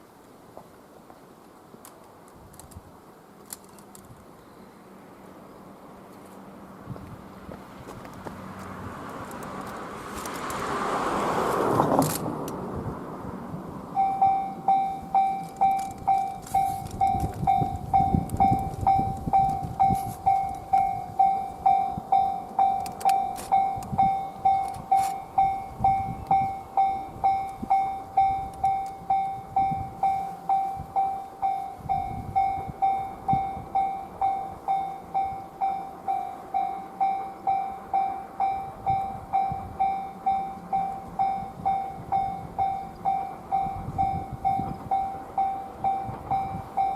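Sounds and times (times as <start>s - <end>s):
level crossing bell ringing: 14.0s - 46.9s.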